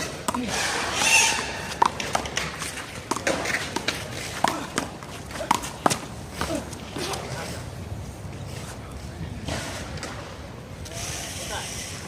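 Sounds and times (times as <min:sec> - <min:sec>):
sneaker squeaks: 0:00.4 - 0:01.8
ball slapping and knocking: 0:01.7 - 0:06.5.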